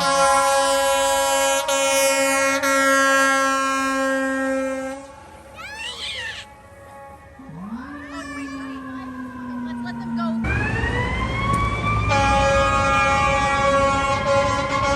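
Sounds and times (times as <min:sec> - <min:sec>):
fire truck air horn blast: 0:00.0 - 0:05.6, 0:12.0 - 0:14.9
siren sweeping up and down: 0:07.4 - 0:12.2.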